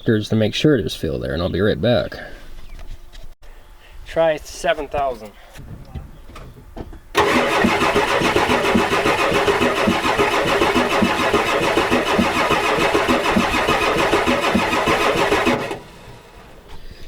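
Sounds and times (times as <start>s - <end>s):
diesel engine cranking: 7.1s - 16.8s.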